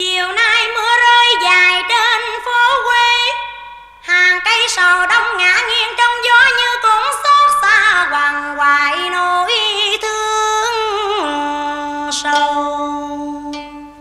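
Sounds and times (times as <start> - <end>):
woman singing slow melody: 0.0 - 14.0.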